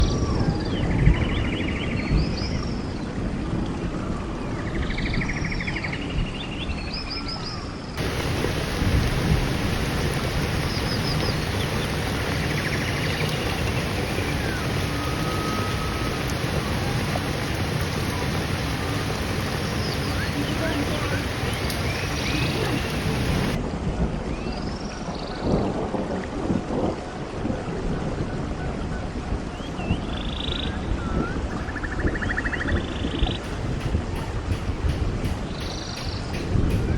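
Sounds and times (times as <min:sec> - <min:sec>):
steady rushing noise: 0:08.0 - 0:24.4, 0:33.1 - 0:36.9.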